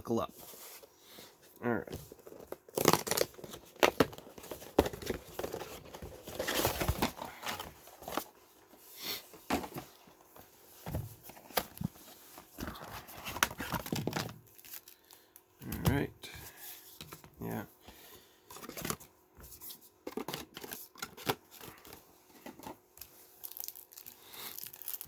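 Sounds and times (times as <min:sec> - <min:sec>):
crinkling plastic and card: 0:02.0 - 0:08.4, 0:11.2 - 0:15.8, 0:18.5 - 0:25.0
packaging torn and crumpled: 0:02.6 - 0:04.3, 0:13.3 - 0:15.2, 0:23.4 - 0:25.0.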